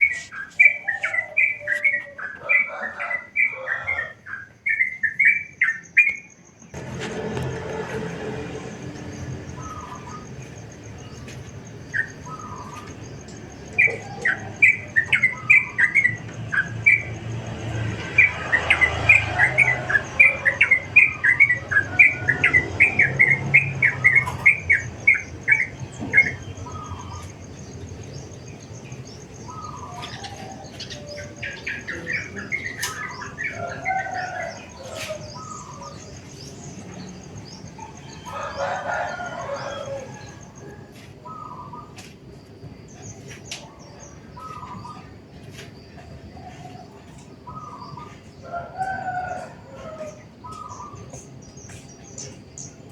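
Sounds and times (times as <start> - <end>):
songbirds chirping: 0.0 - 52.9
low rumble: 6.8 - 12.4.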